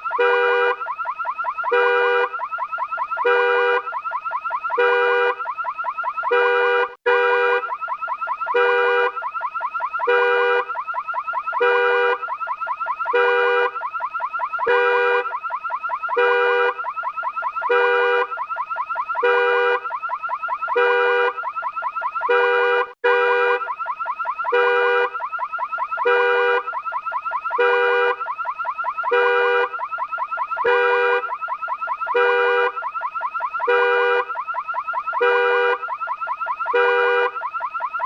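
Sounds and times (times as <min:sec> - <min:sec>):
car alarm steady blare: 0:00.0 - 0:38.0
car alarm warbling tone: 0:00.0 - 0:38.0.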